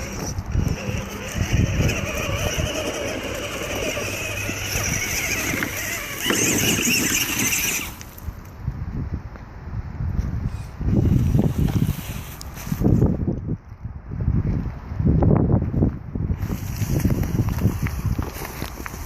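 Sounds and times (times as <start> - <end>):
electric motors whining: 0.0 - 8.2.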